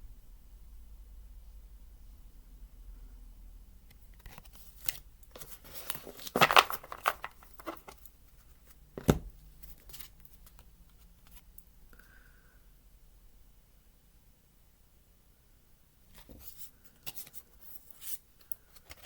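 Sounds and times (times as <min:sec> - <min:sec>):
cards and paper rustling: 0:04.2 - 0:11.4, 0:16.2 - 0:19.0.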